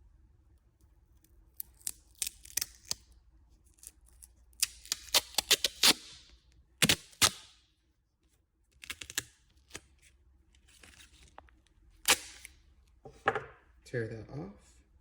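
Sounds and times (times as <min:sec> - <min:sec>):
adhesive tape ripping off roll: 0:01.6 - 0:03.1, 0:04.5 - 0:07.6, 0:08.8 - 0:09.8, 0:12.0 - 0:12.6.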